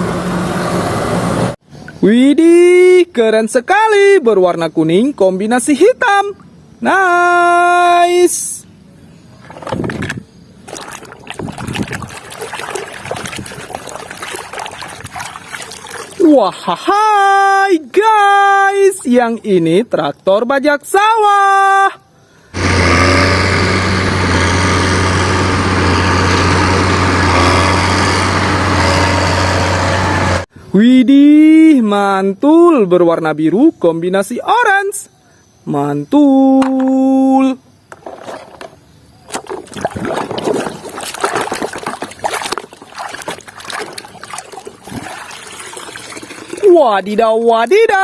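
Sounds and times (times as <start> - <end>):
water splashing and trickling: 9.3 - 16.9, 37.9 - 48.0.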